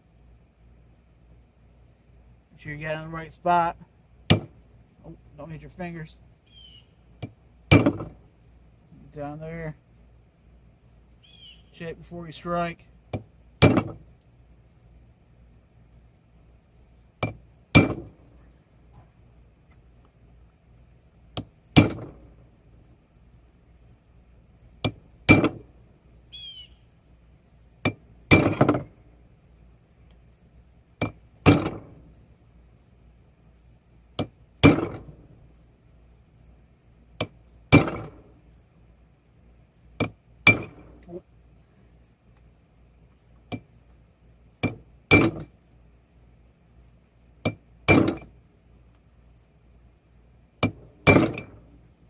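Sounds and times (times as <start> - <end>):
hammer striking steel on anvil: 24.8 - 25.6, 37.2 - 38.2, 40.0 - 40.9, 44.6 - 45.5, 50.6 - 51.6.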